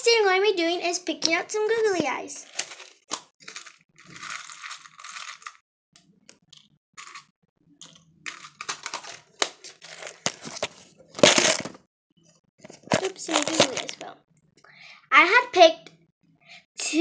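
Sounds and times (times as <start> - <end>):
plastic pack rustling: 2.4 - 5.6, 8.2 - 11.8, 12.7 - 14.1.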